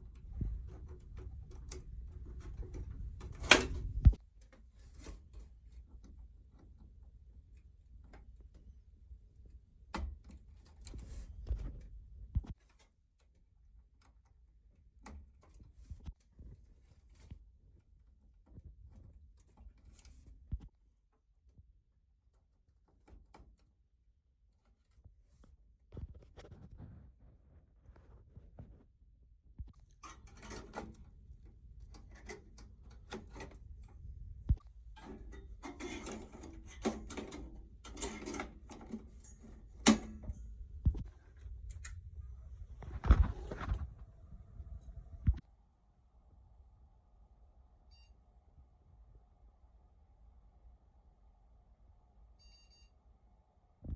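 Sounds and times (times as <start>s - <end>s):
handling rustles and clicks: 0.0s - 14.4s, 29.7s - 44.1s.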